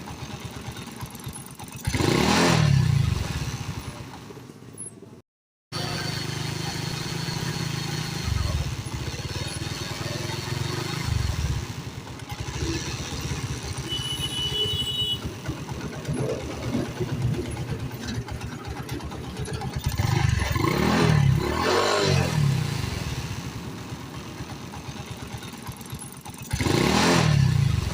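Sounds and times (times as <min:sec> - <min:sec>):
motorcycle engine idling: 0:00.0 - 0:04.9, 0:05.8 - 0:20.7, 0:22.4 - 0:27.9.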